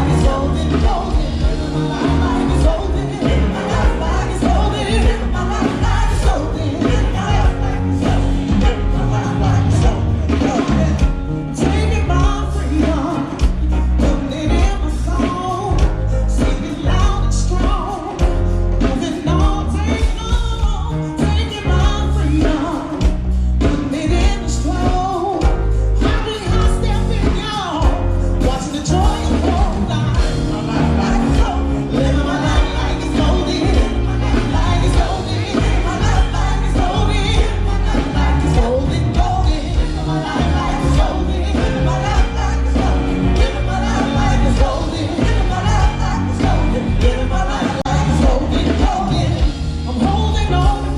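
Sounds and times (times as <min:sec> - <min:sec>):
lead singer singing: 0:00.0 - 0:50.9
live band playing: 0:00.0 - 0:50.9.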